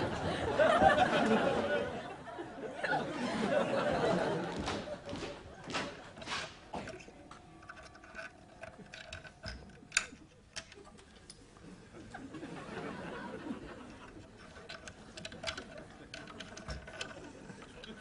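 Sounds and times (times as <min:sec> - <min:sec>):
small clicks and knocks: 0:04.5 - 0:11.5, 0:13.9 - 0:18.0.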